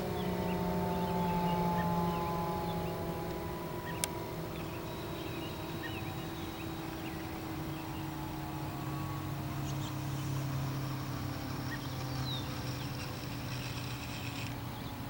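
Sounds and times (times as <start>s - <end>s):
siren winding down: 0.0s - 11.9s.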